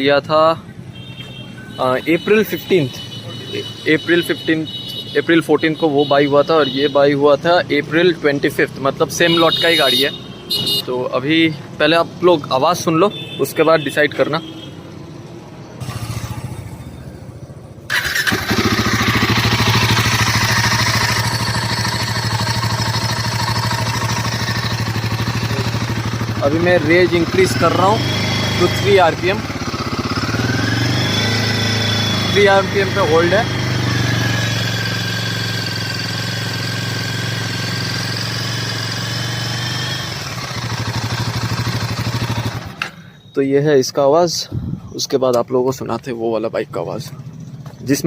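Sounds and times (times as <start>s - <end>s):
motorcycle engine idling: 15.9s - 43.0s
engine starter cranking: 17.9s - 21.3s.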